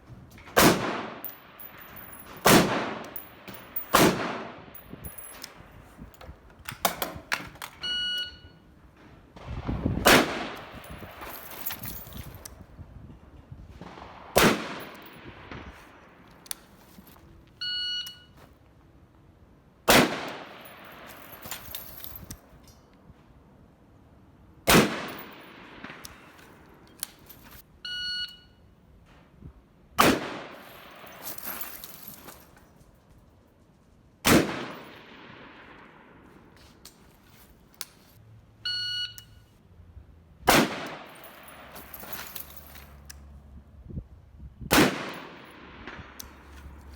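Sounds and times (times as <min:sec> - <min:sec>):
rifle shots with echo: 0:00.6 - 0:05.0, 0:09.4 - 0:11.4, 0:13.8 - 0:16.2, 0:19.9 - 0:21.2, 0:24.6 - 0:26.6, 0:30.0 - 0:31.2, 0:34.2 - 0:36.2, 0:40.5 - 0:41.8, 0:44.7 - 0:46.5.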